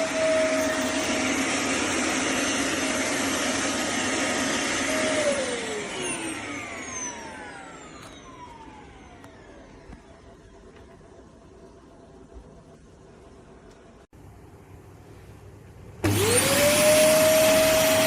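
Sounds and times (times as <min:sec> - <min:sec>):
vacuum cleaner motor whine: 0:00.0 - 0:10.9, 0:16.0 - 0:18.0.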